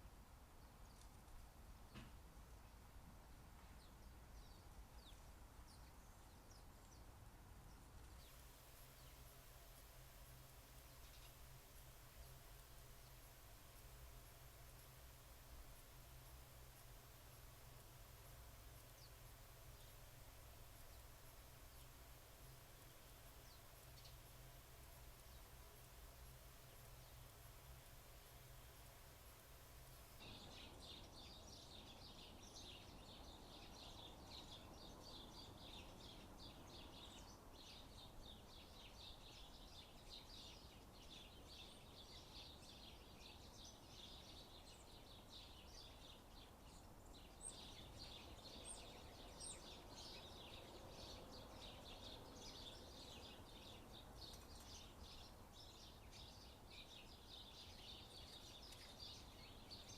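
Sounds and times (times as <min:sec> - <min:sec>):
small birds chirping: 0:00.0 - 0:59.9.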